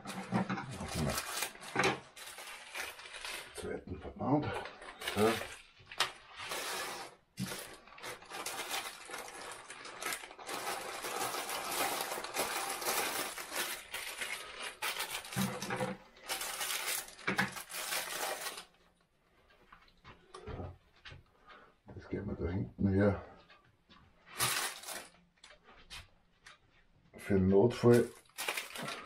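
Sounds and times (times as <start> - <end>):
plastic wrapping crinkling: 0.0 - 3.8, 4.6 - 18.9, 24.3 - 25.5, 27.8 - 29.0.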